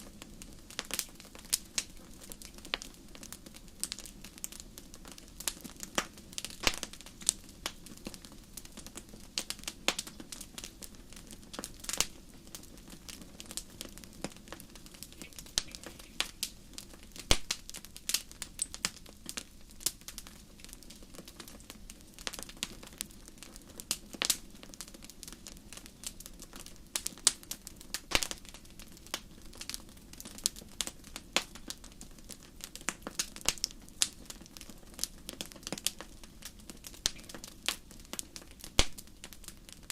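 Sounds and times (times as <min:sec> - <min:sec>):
fire crackling and popping: 0:00.0 - 0:39.9.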